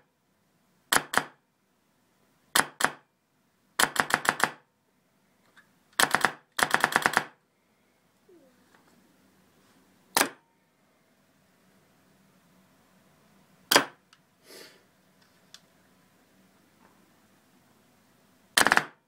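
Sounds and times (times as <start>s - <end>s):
suppressed airsoft gun shots: 13.7s - 14.0s, 18.6s - 19.0s.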